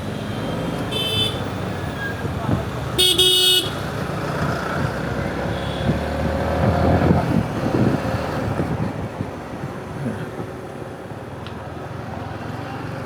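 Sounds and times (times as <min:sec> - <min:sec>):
vehicle horn honk: 0:00.9 - 0:01.5, 0:03.0 - 0:03.8
wind on microphone: 0:05.8 - 0:09.9.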